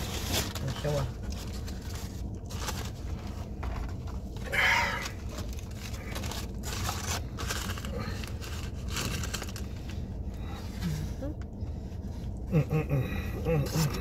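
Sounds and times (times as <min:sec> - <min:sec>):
paper wrappers rustling: 0:00.0 - 0:10.2
steady low hum: 0:00.0 - 0:14.0.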